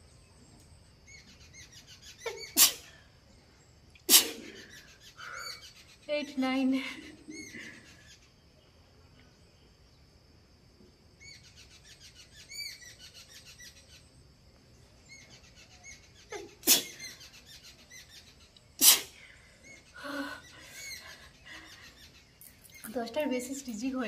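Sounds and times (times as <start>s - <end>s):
faint birds chirping: 0.0s - 24.0s
woman sneezing: 2.4s - 2.9s, 4.1s - 4.6s, 16.3s - 17.0s, 18.8s - 19.2s.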